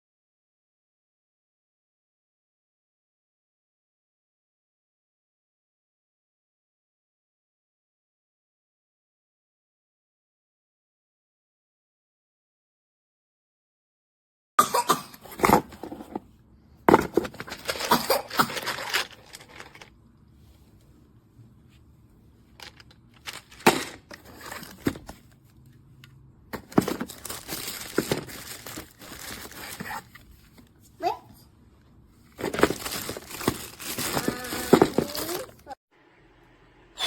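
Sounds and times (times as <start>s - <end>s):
plastic packaging crinkling: 17.2s - 19.9s, 26.6s - 30.2s, 32.4s - 35.7s.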